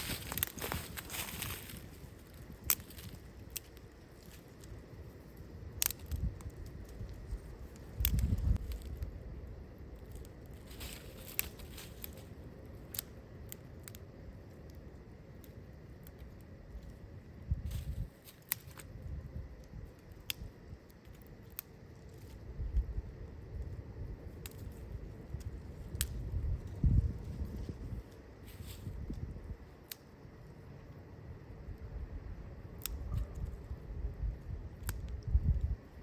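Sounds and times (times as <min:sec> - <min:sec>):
sharp clicks and crackles: 0:00.0 - 0:09.1, 0:09.8 - 0:17.0, 0:17.6 - 0:22.9, 0:23.6 - 0:28.3, 0:29.8 - 0:30.2, 0:32.7 - 0:33.7, 0:34.7 - 0:35.8
wind gusting against microphone: 0:00.0 - 0:12.7, 0:22.2 - 0:29.8, 0:31.2 - 0:36.0.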